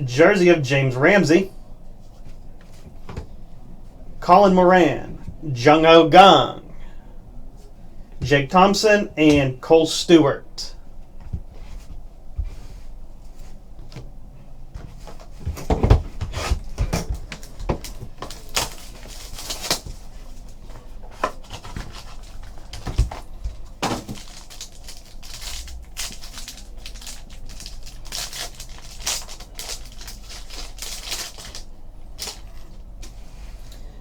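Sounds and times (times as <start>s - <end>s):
cards and packaging rustling: 15.8s - 33.7s.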